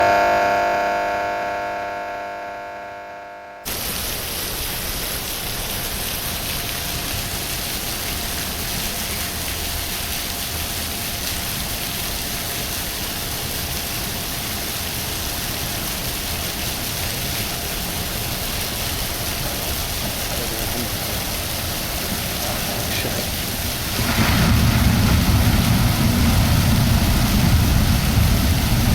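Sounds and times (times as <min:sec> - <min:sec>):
faint steady hum: 0:00.0 - 0:28.9
rain: 0:03.7 - 0:28.9
rushing water: 0:03.7 - 0:28.9.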